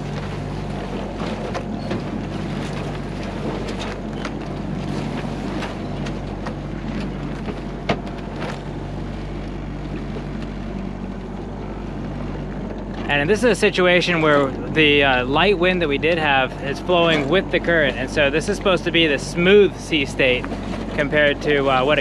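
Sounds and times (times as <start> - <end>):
boat engine running: 0.0 - 22.0
water slapping against hull: 0.0 - 22.0.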